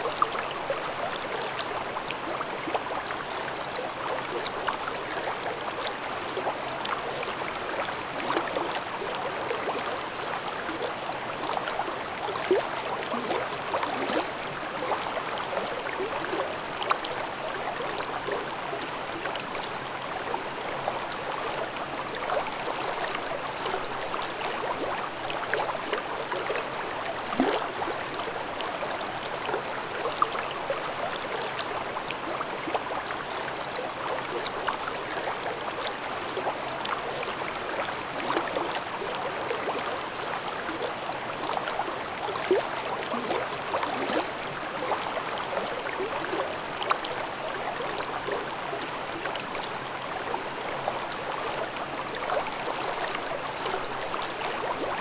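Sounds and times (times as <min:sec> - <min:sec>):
stream babbling over rocks: 0:00.0 - 0:55.0.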